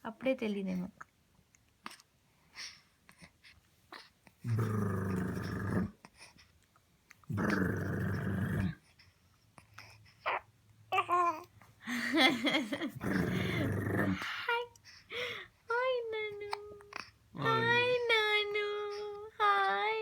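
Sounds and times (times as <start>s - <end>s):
loud rough growls: 4.5s - 5.9s, 7.3s - 8.8s, 13.0s - 14.2s.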